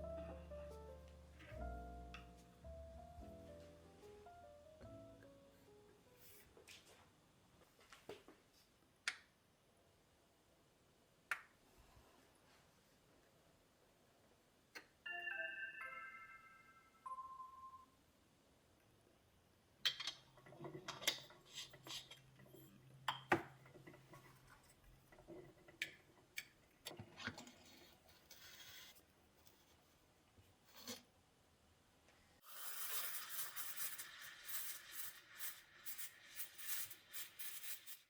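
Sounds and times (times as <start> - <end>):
continuous crackly hiss: 20.1 - 31.0.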